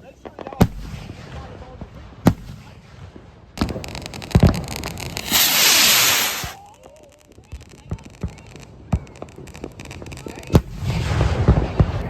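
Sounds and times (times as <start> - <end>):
firework bang: 3.6 - 6.6
firework hiss: 3.6 - 7.1
firework pops: 3.6 - 10.8
firework crackling: 3.6 - 11.9.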